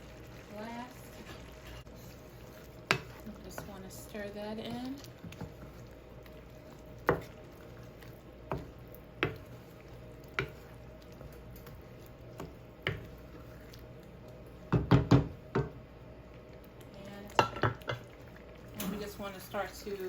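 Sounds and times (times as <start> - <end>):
thick salsa being stirred: 0.0 - 15.6
spoon knocking against a pan: 14.7 - 15.7.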